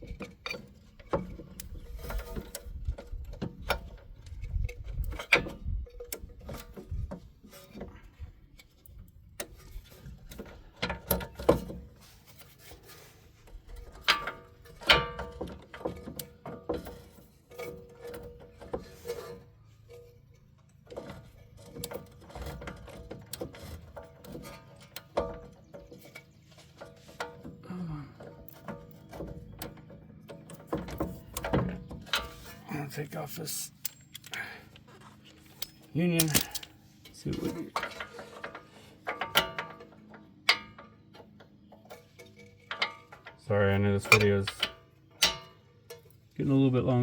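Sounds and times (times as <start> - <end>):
metallic clicks of hand tools: 33.7 - 34.5, 35.5 - 39.8, 44.0 - 46.1.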